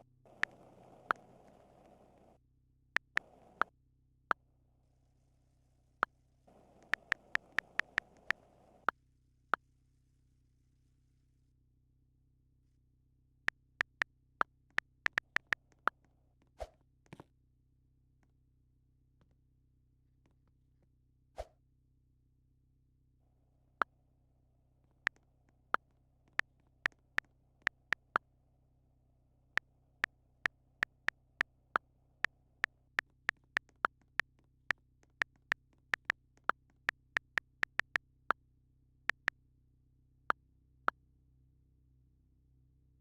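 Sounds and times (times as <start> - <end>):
faint low hum: 0.0 - 16.5
sharp single clicks: 6.8 - 8.4.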